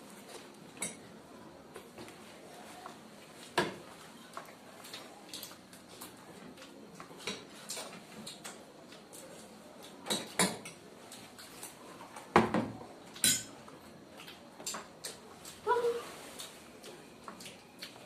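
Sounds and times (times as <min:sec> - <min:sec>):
cutlery clinking on plates: 0:10.0 - 0:10.8, 0:13.1 - 0:13.6.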